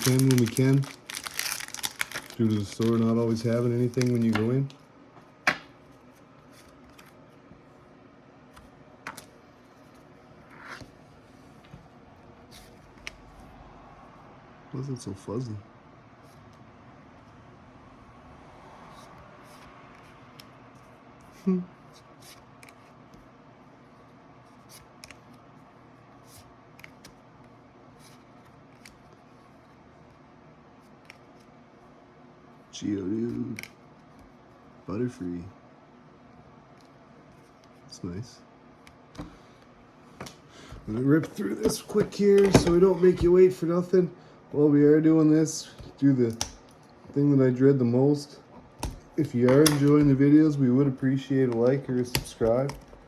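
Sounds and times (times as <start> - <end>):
cards rustling: 0.0 - 4.8, 40.2 - 43.8, 48.8 - 53.0
cards ticking: 0.0 - 4.8, 51.4 - 53.0
trading cards clicking: 48.8 - 50.2.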